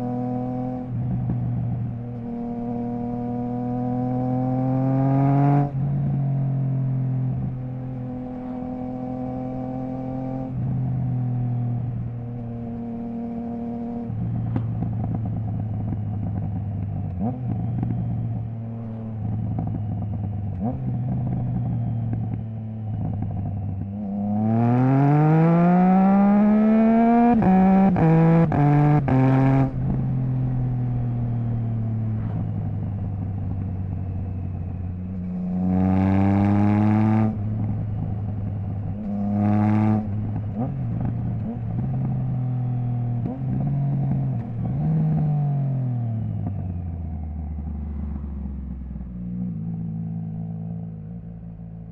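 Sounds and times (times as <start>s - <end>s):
motorcycle engine accelerating: 0.0s - 51.9s.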